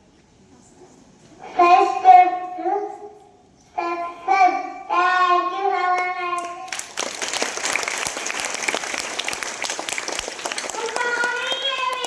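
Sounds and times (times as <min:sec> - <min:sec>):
audience applause: 0:06.4 - 0:12.0.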